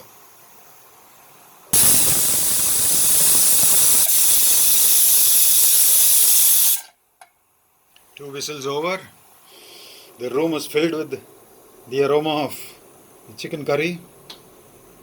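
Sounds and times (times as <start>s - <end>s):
pressure cooker whistling: 1.8s - 6.9s.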